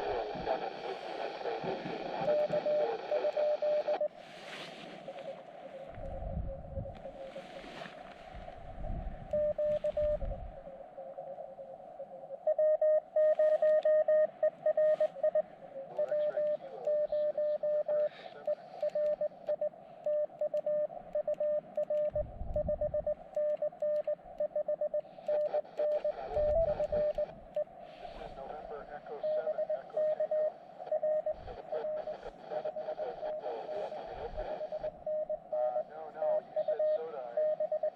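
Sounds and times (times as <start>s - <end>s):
receiver hiss: 0.0s - 37.9s
morse code tone: 12.5s - 15.4s.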